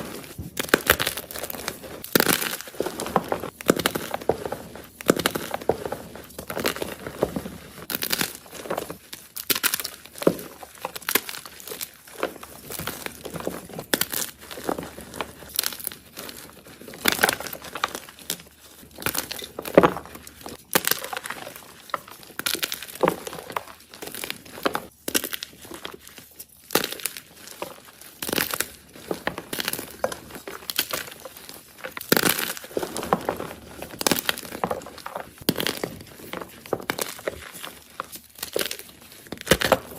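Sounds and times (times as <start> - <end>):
chalk block crunching: 0.0 - 39.9.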